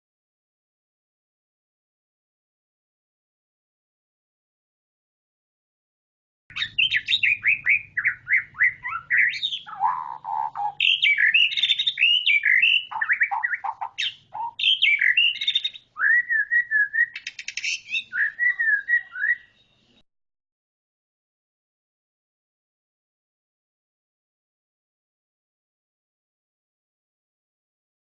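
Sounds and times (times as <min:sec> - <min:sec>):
bird singing whistled song: 0:06.5 - 0:20.0.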